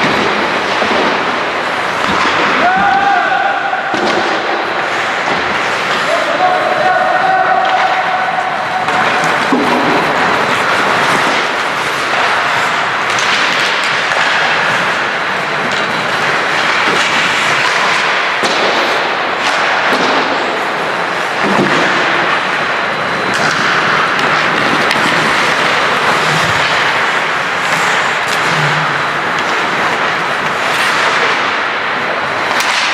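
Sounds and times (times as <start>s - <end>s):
hockey sticks and puck clacking: 0.0s - 32.9s
skates scraping on ice: 0.0s - 32.9s.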